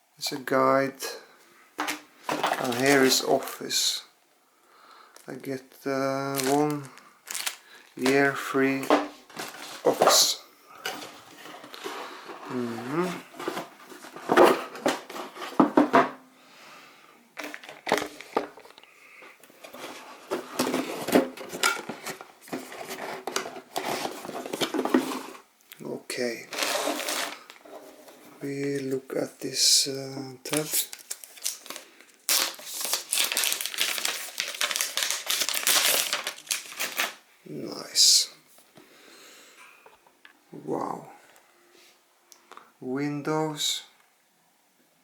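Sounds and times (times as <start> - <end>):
packaging crinkling and rustling: 1.8 - 3.6, 6.2 - 16.0, 17.4 - 25.5, 26.4 - 28.2, 30.4 - 37.2.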